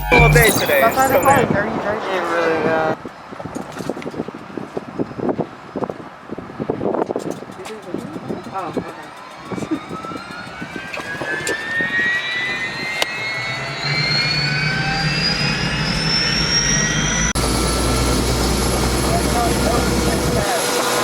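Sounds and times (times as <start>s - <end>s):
helicopter running: 0.0s - 1.6s, 7.9s - 21.0s
helicopter turbine whine: 8.1s - 21.0s
low hum: 10.5s - 20.4s.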